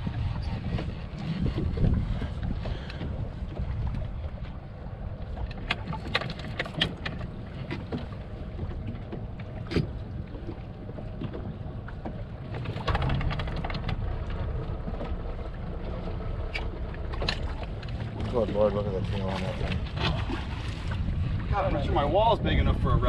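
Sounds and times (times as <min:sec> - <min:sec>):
wind on microphone: 0:00.0 - 0:06.2, 0:06.9 - 0:23.0
water rumble around boat: 0:00.0 - 0:23.0
sharp clicks and knocks: 0:12.0 - 0:14.4.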